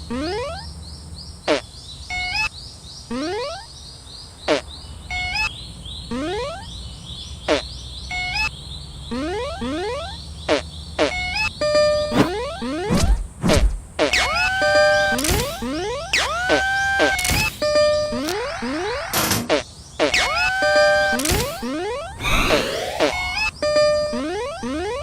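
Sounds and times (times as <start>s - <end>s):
stepped beeps: 8.1s - 8.5s, 9.1s - 10.2s, 11.0s - 13.2s
rising chirps: 9.1s - 13.6s, 20.2s - 25.0s
twittering chirps: 20.0s - 25.0s.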